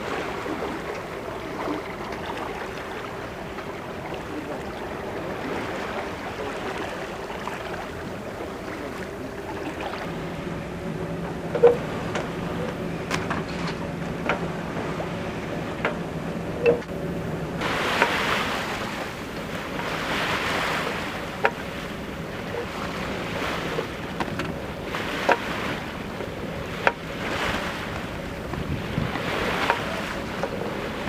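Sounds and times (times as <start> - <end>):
sea water splashing along hull: 0.0 - 31.0
wind on microphone: 16.4 - 31.0.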